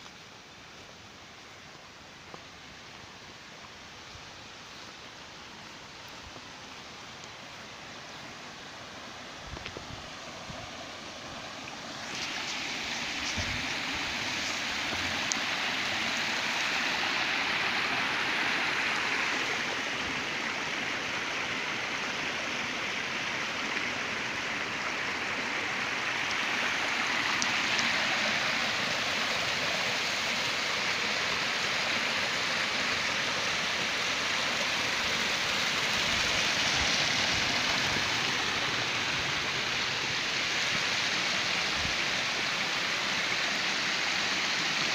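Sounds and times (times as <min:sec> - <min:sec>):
stream flowing: 0:00.0 - 0:44.9.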